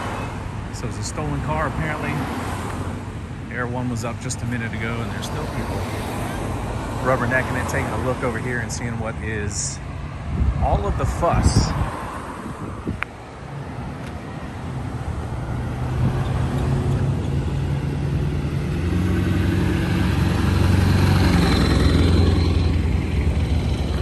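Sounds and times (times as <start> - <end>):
vehicle engine humming: 0.0 - 24.0.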